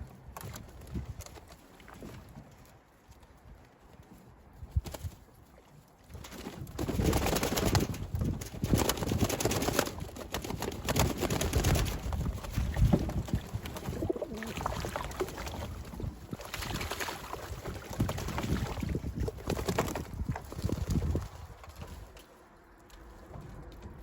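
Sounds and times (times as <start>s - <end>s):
wing flaps: 4.6s - 5.5s, 6.1s - 22.4s
water splashes: 11.4s - 22.2s
pigeon calls: 13.8s - 14.9s.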